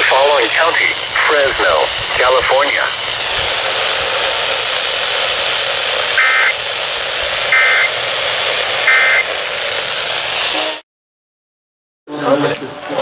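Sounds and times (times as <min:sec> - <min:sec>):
radio hiss: 0:00.0 - 0:10.8
alert data tone bursts: 0:06.2 - 0:06.7, 0:07.4 - 0:08.1, 0:08.7 - 0:09.4.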